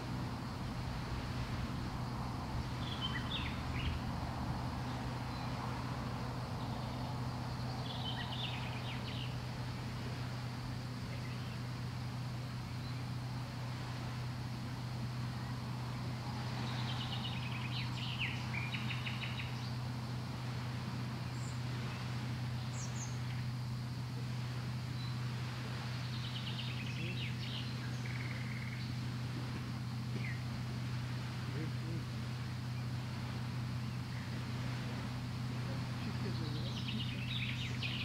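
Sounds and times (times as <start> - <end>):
constant rushing background noise: 0.0 - 38.0
small birds chirping: 0.0 - 38.0
steady low hum: 0.0 - 38.0.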